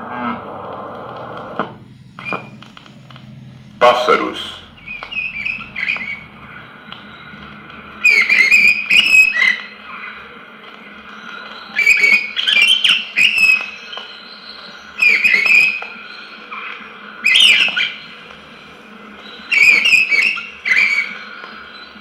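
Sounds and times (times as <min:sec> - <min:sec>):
low hum: 0:00.0 - 0:08.0
record hiss: 0:00.0 - 0:22.0
birds chirping and whistling: 0:01.8 - 0:22.0.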